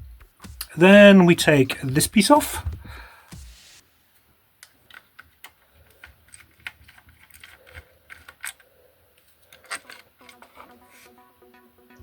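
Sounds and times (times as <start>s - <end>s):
model parts clicking: 4.6s - 10.6s.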